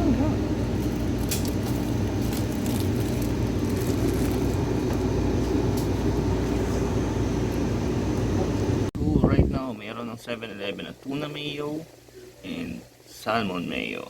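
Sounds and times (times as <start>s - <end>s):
low mechanical rumble and hum: 0.0s - 11.2s.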